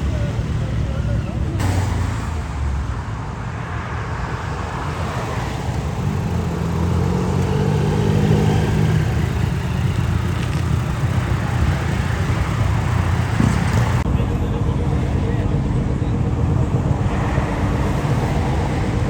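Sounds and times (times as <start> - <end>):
road traffic noise: 0.0 - 19.0
vehicle engine running: 5.7 - 19.0.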